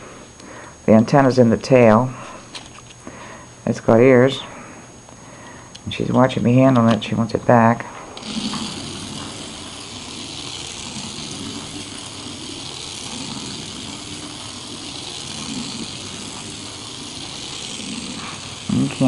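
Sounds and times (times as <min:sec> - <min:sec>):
toy motor whirring: 0:08.2 - 0:19.0.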